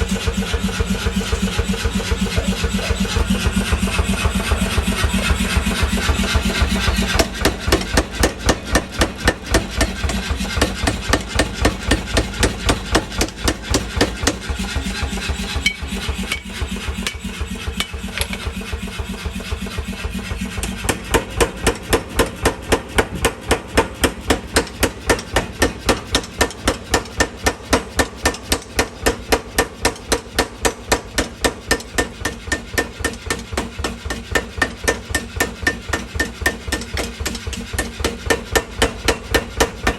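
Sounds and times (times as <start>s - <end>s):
motor hum: 0.0s - 28.8s
power hammer pounding steel: 0.0s - 39.9s.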